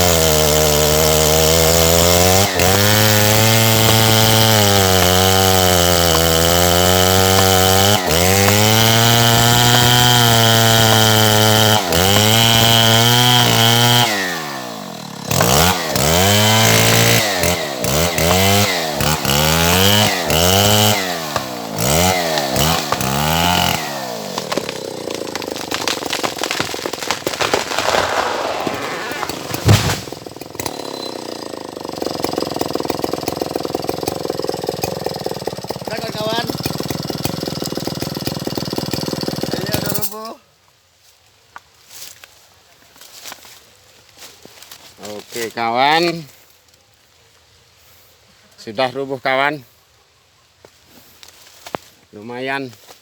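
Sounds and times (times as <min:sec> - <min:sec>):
chainsaw revving: 0:00.0 - 0:40.2.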